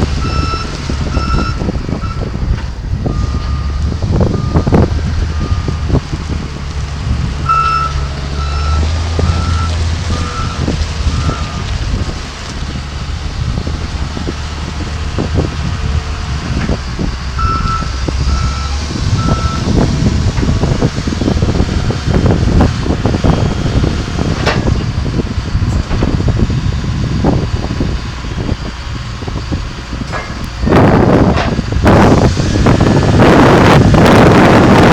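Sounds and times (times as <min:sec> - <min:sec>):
diesel engine running: 0:00.0 - 0:34.9
backup alarm beeping: 0:07.5 - 0:11.6, 0:17.4 - 0:19.7.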